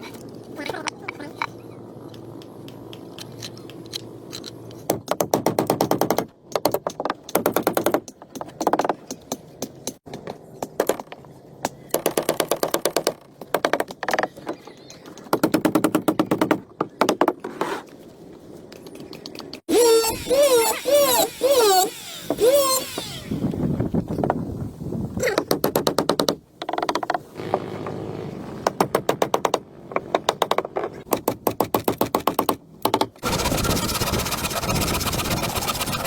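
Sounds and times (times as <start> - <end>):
power tool clattering: 19.7 - 23.5.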